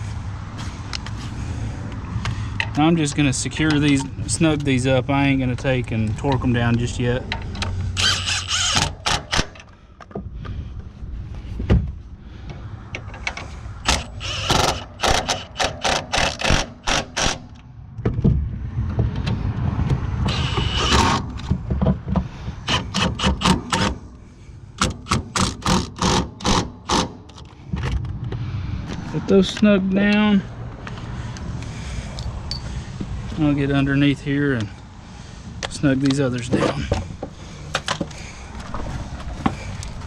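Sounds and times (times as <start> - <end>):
hand ratchet clicking: 7.6 - 9.7, 13.9 - 17.5.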